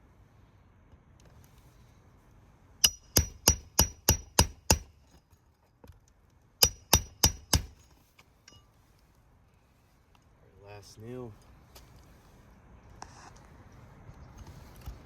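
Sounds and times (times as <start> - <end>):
hammer striking roofing nails: 2.8 - 4.9, 6.6 - 7.8.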